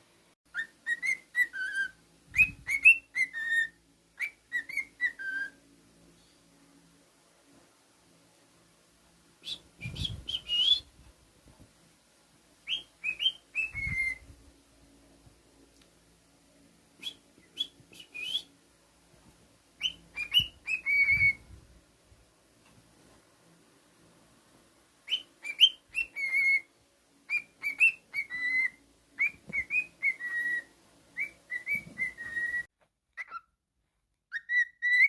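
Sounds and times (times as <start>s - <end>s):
cockatiel whistling: 0.5s - 5.6s, 9.4s - 10.9s, 12.6s - 14.3s, 17.0s - 18.5s, 19.8s - 21.4s, 25.0s - 26.7s, 27.3s - 33.5s, 34.3s - 35.0s.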